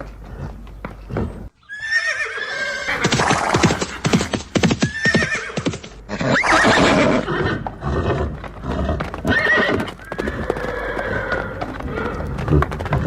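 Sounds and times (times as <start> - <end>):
horse hooves clopping on hard ground: 0.0 - 1.5, 2.9 - 6.0, 7.4 - 13.0
horse whinnies: 1.6 - 3.9, 4.8 - 13.0.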